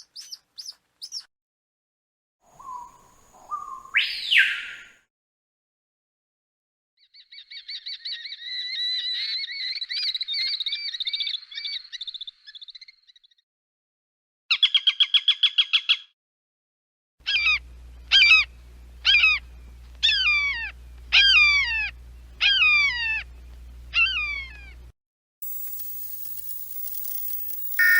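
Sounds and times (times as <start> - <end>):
low steady hum: 17.6 - 27.9.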